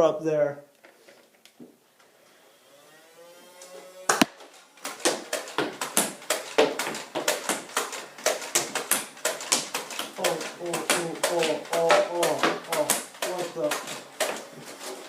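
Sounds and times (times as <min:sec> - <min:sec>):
toy blaster firing foam darts: 0:04.1 - 0:10.4.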